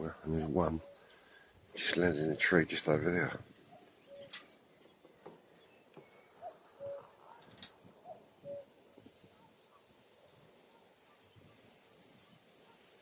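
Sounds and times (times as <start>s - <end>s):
distant cuckoo calling: 0.0s - 1.7s, 3.4s - 9.9s.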